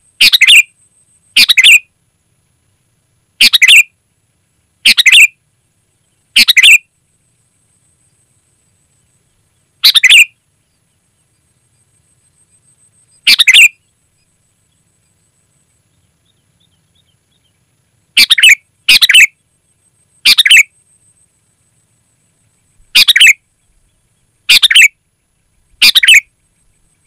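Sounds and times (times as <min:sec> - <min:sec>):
bulbul bird calls: 0:00.2 - 0:01.9, 0:03.4 - 0:03.9, 0:04.8 - 0:05.4, 0:06.3 - 0:06.9, 0:09.3 - 0:11.5, 0:12.2 - 0:15.2, 0:15.9 - 0:19.4, 0:20.2 - 0:20.7, 0:22.7 - 0:27.0.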